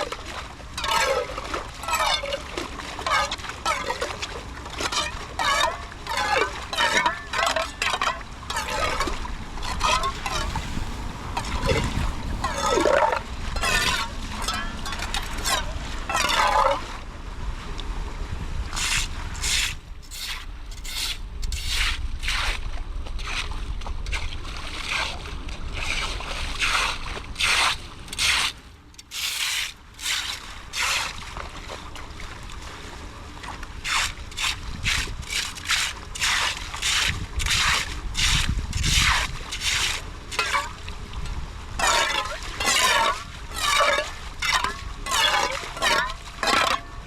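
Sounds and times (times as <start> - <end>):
water trickling: 0.0 - 17.0, 33.9 - 47.0
hand tool scraping a drain: 4.9 - 16.7, 18.8 - 22.6, 25.9 - 31.2, 33.8 - 40.8, 41.8 - 47.0.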